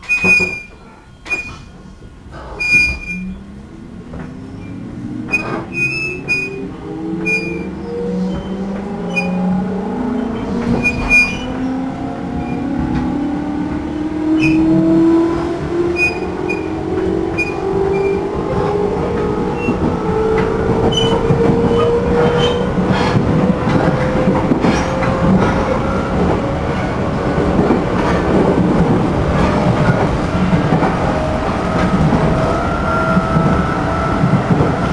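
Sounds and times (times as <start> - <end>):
electric train motors whining: 3.0 - 34.9
clicks from the track: 15.4 - 32.4.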